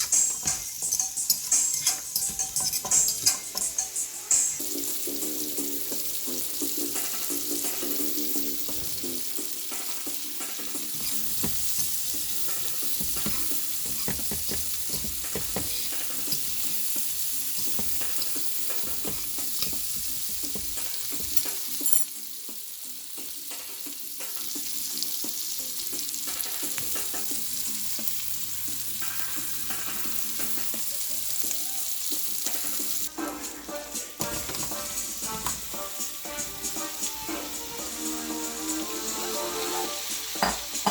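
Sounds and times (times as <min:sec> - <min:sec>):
utensil knocking and scraping pan: 0:00.0 - 0:03.7, 0:10.7 - 0:21.6, 0:40.4 - 0:40.9
food sizzling in a frying pan: 0:00.0 - 0:40.9.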